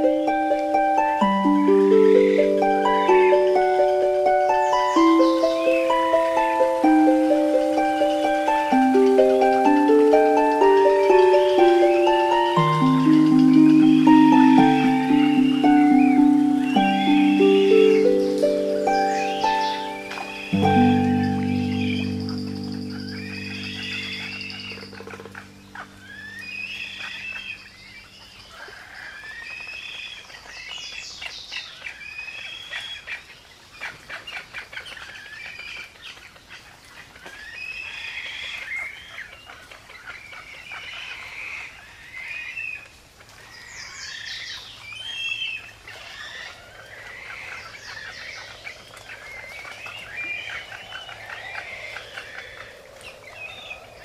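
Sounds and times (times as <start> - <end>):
songbirds singing: 0.0 - 33.7, 37.2 - 54.0.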